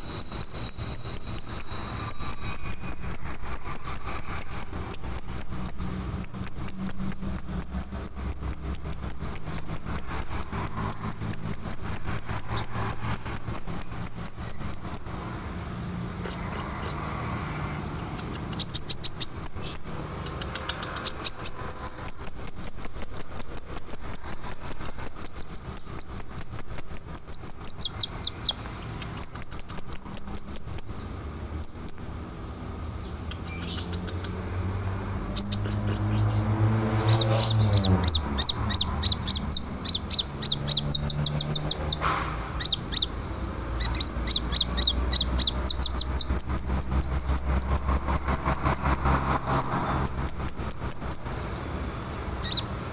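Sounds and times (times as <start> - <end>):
bird chirping rapidly: 0.0 - 52.9.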